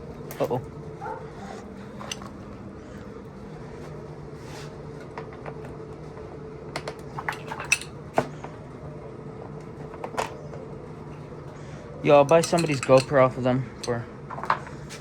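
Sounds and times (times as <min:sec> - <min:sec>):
steady low hum: 0:00.0 - 0:15.0
metallic clicks of tools: 0:12.3 - 0:13.2.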